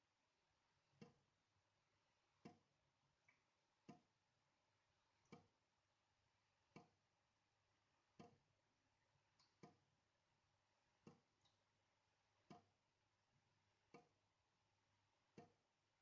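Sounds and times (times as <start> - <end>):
water drops dripping: 2.4 - 4.2, 6.7 - 7.0, 8.1 - 8.5, 9.3 - 9.9, 11.0 - 11.7, 12.4 - 12.8, 15.3 - 15.6.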